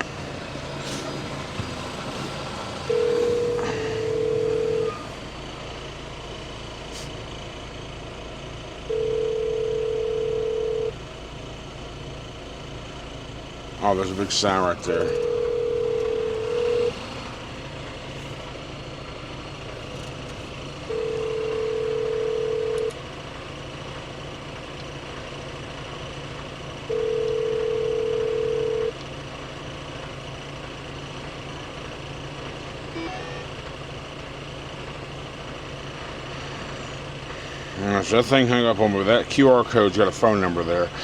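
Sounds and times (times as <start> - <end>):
truck engine idling: 0.0 - 41.0
telephone ringback tone: 2.9 - 5.1, 8.9 - 11.0, 15.1 - 17.0, 20.9 - 22.9, 26.9 - 29.0, 32.9 - 33.6.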